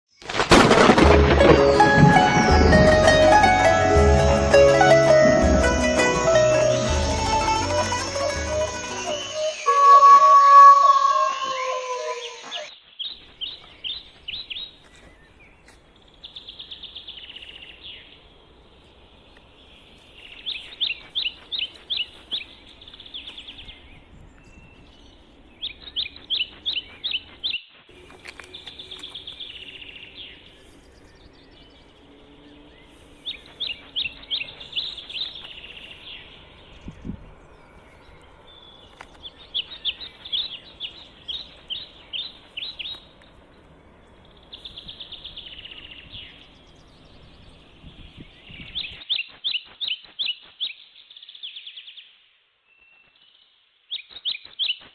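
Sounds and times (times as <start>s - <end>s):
buzzy bird trills: 1.6s - 12.7s
songbird singing high notes: 1.6s - 12.7s.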